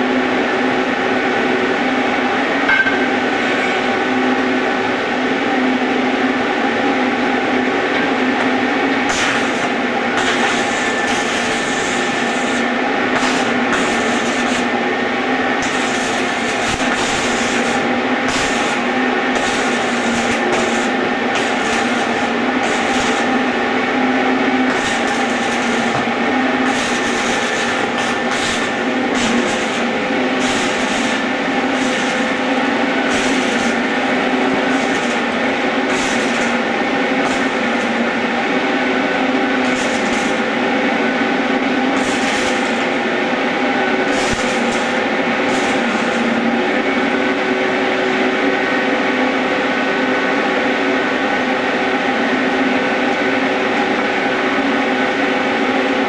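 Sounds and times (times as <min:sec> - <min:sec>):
power tool grinding metal: 0:09.0 - 0:47.5.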